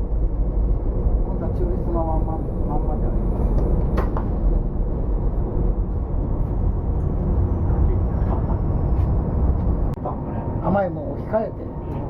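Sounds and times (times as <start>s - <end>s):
ship diesel machinery drone: 0.0s - 12.0s.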